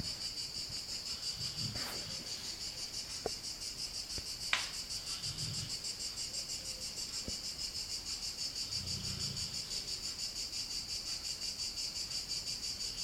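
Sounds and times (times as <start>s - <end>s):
pet snoring softly: 1.1s - 2.5s, 5.0s - 6.0s, 8.6s - 10.0s.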